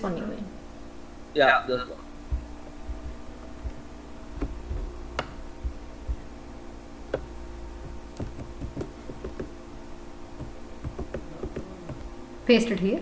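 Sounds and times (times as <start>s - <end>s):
low electrical hum: 0.0s - 13.0s
computer keyboard and mouse clicks: 8.2s - 9.5s, 10.4s - 12.0s.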